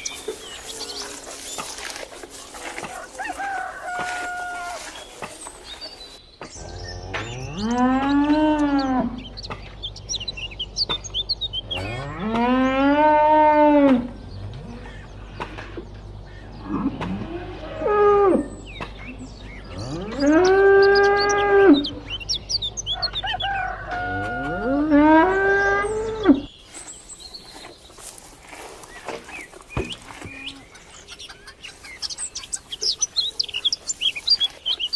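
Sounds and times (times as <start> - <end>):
bird chirps: 0.0 - 2.4, 3.0 - 12.8, 18.4 - 23.8, 25.3 - 34.9
cows mooing: 0.0 - 5.1, 6.7 - 9.4, 11.6 - 26.5.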